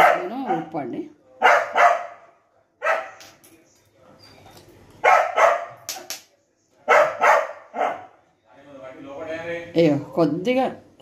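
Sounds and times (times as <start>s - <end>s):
dog barking: 0.0s - 0.8s, 1.4s - 3.2s, 5.0s - 5.9s, 6.9s - 8.2s.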